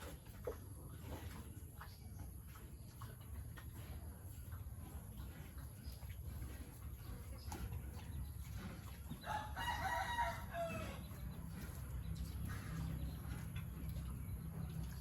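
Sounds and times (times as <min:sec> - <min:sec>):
rooster crowing: 0:09.3 - 0:11.0.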